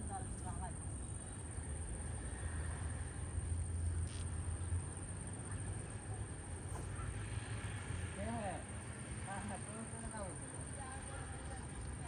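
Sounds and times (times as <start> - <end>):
insect drone: 0.0 - 12.0.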